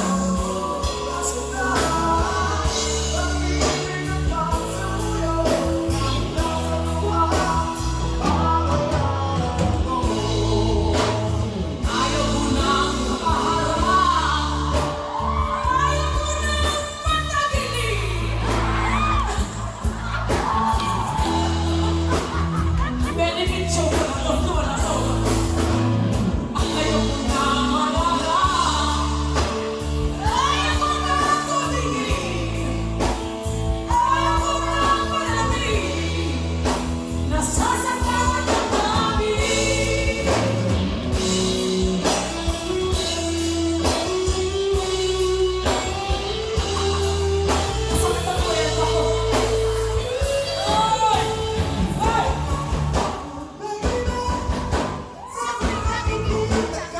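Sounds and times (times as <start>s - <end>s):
instrumental accompaniment with bass: 0.0s - 56.9s
person singing: 0.0s - 56.9s.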